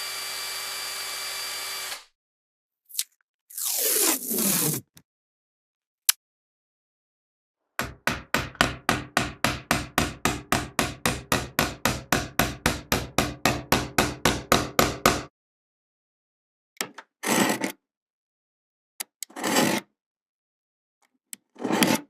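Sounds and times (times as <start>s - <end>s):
hammer driving a nail: 7.8s - 15.3s.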